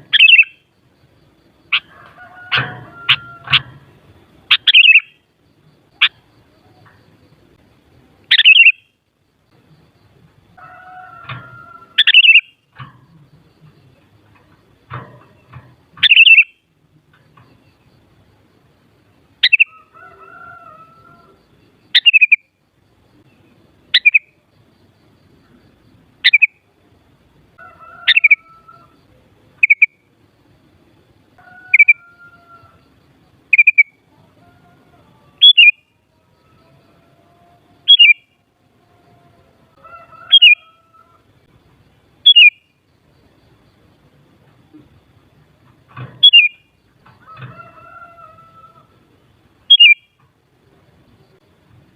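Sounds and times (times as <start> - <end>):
softer low bird calls: 0.0 - 0.7, 4.4 - 5.2, 8.3 - 8.9, 11.7 - 14.4, 15.4 - 16.7, 40.2 - 41.2, 46.2 - 46.7, 49.7 - 50.2
bird chirping sharply: 0.1 - 0.6, 4.5 - 5.2, 8.3 - 8.9, 12.0 - 12.6, 16.0 - 16.6, 21.9 - 22.5, 23.9 - 24.3, 33.5 - 33.9, 35.4 - 35.8, 37.9 - 38.3, 40.3 - 40.7, 42.2 - 42.6, 46.2 - 46.7, 49.7 - 50.1.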